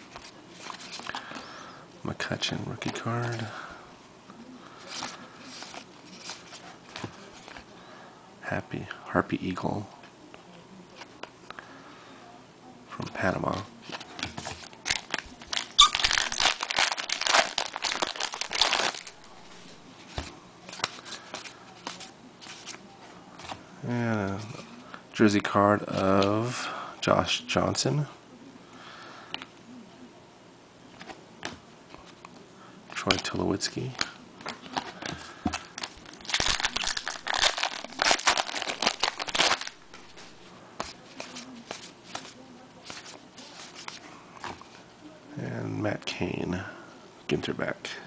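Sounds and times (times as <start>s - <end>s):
cards clicking and rustling: 13.3s - 19.4s, 31.0s - 44.7s
wrapper crinkling and tearing: 13.9s - 19.8s, 34.7s - 44.0s.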